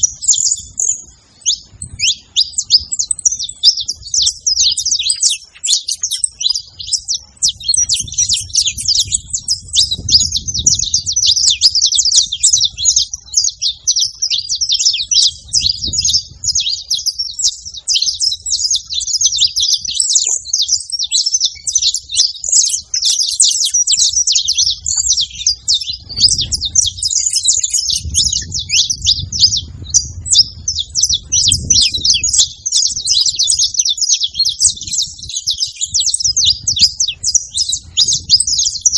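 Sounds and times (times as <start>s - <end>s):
finches chirping and singing: 0.0s - 38.9s.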